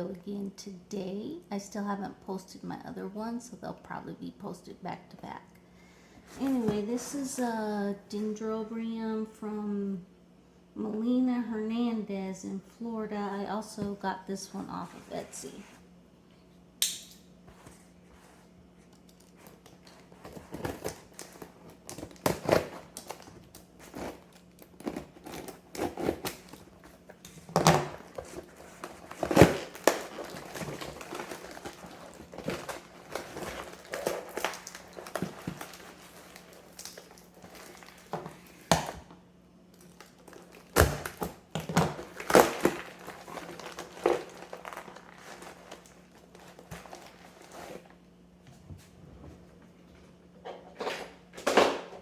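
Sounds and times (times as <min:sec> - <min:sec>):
packing material crinkling: 0:17.6 - 0:39.0, 0:39.7 - 0:48.0.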